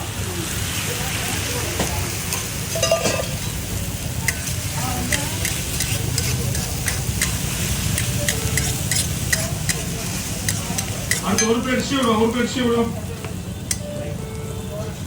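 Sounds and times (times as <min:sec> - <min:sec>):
food sizzling on pan: 0:00.0 - 0:13.9
metal utensil scraping pan: 0:04.2 - 0:12.2.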